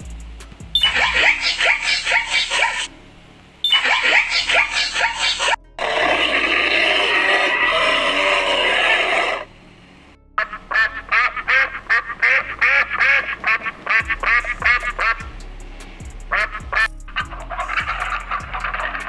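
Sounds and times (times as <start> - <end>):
ducks quacking: 0.8 - 2.9, 3.6 - 9.5, 10.4 - 15.3, 16.3 - 19.0
loud animal din: 3.7 - 9.5.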